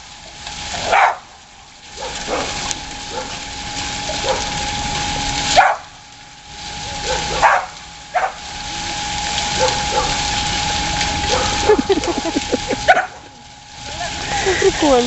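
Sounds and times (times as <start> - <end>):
water spraying hiss: 0.0 - 15.0
dog barking: 0.8 - 1.2, 2.0 - 3.4, 4.1 - 4.5, 5.6 - 5.9, 7.0 - 8.4, 9.6 - 10.2, 11.3 - 11.6, 12.9 - 13.2
dog yipping: 11.3 - 11.6.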